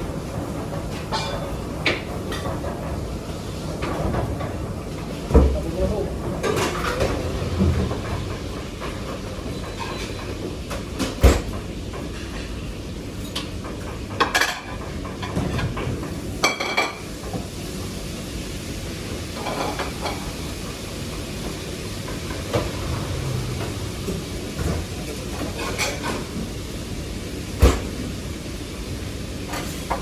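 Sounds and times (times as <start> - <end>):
metal pans and utensils clanking: 0.9 - 2.6, 22.1 - 26.6.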